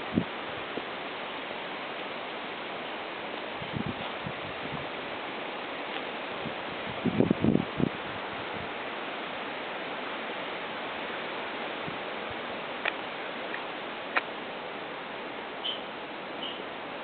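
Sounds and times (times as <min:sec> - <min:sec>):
strong wind rushing: 0:03.6 - 0:04.9, 0:06.4 - 0:08.7.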